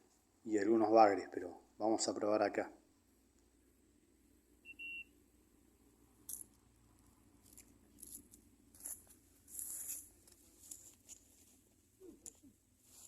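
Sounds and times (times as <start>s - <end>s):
faint clicks and rustles: 6.2s - 13.0s.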